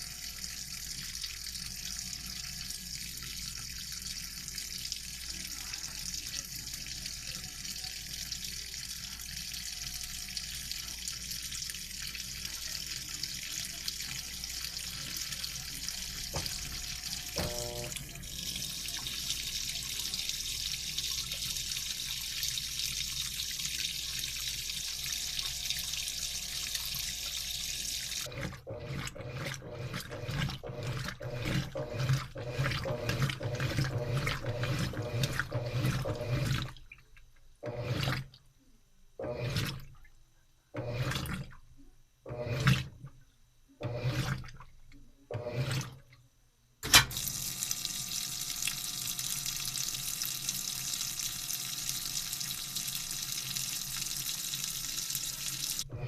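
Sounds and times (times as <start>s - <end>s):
water running into washing machine: 0.0s - 38.4s, 39.2s - 40.1s, 40.7s - 41.7s, 42.3s - 43.2s, 43.8s - 46.2s, 46.8s - 56.0s
washing machine drum sloshing: 16.1s - 19.4s, 28.2s - 37.0s, 37.6s - 38.4s, 39.2s - 40.0s, 40.8s - 41.6s, 42.3s - 43.2s, 43.8s - 44.7s.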